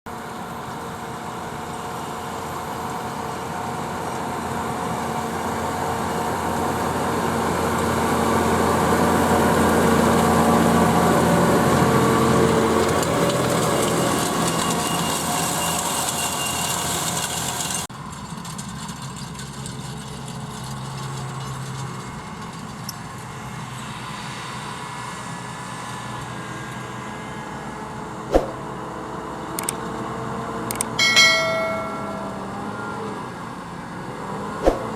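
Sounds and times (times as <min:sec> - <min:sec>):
tractor diesel engine running: 0:00.3 - 0:25.0
sharp click: 0:29.6 - 0:29.8, 0:30.7 - 0:32.5.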